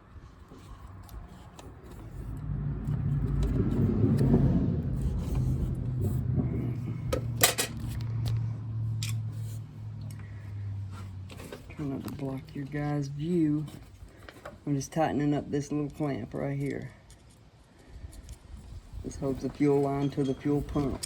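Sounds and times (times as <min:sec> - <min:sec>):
vehicle engine running: 0:00.6 - 0:14.0.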